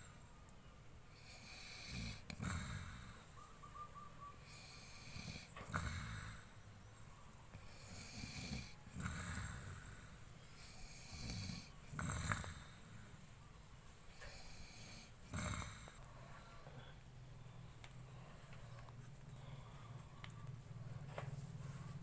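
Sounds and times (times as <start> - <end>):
person snoring: 1.2 - 3.3, 4.4 - 6.5, 7.6 - 13.1, 14.1 - 16.0.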